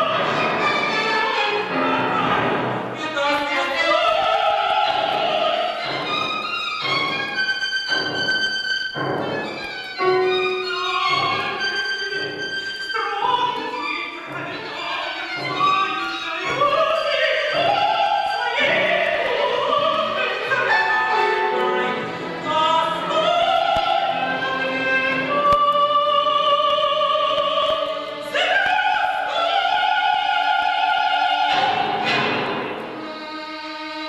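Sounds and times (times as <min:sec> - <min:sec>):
solo violin: 0:00.0 - 0:34.0
string orchestra: 0:00.0 - 0:34.0
woman singing: 0:15.6 - 0:32.4.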